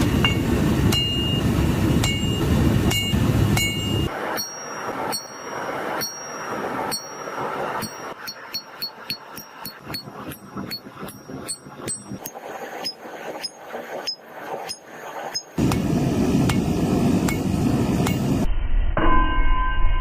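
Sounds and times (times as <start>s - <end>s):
hammer blows on metal: 0.0s - 13.5s
loud steady noise: 0.0s - 18.5s.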